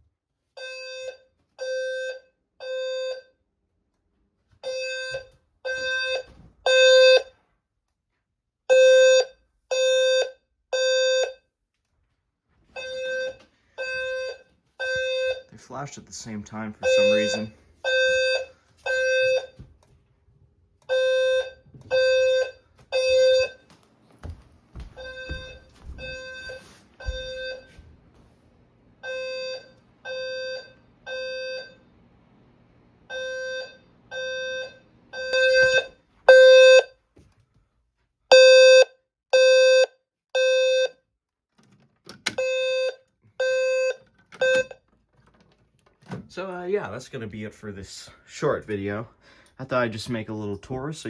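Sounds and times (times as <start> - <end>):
fire alarm buzzy blasts: 0.6 - 3.4, 4.6 - 7.4, 8.7 - 11.5, 12.7 - 15.6, 16.8 - 19.6, 20.9 - 23.7, 25.0 - 27.8, 29.0 - 31.9, 33.0 - 37.0, 38.3 - 41.1, 42.2 - 44.8.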